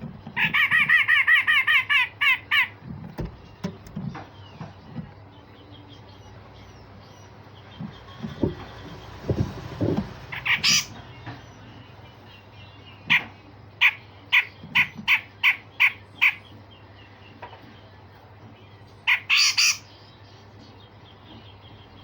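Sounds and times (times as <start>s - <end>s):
bird harsh rasping calls: 0.4s - 3.6s, 6.7s - 11.7s, 12.9s - 16.6s, 19.0s - 20.1s.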